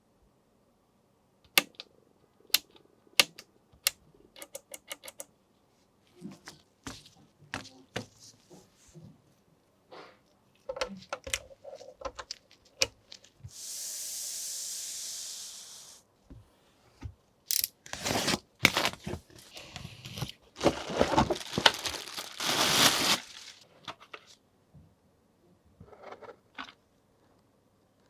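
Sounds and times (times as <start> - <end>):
steady hiss: 13.5 - 16.1
crinkling and tearing: 20.0 - 23.7.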